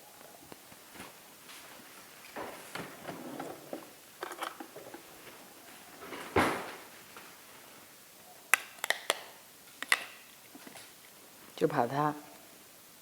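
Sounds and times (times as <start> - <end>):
light rustles and knocks: 0.5 - 7.4.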